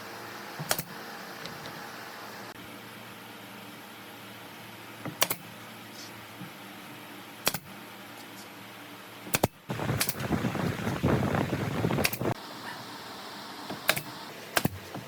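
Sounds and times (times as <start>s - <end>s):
rough crackling noise: 9.7s - 12.4s.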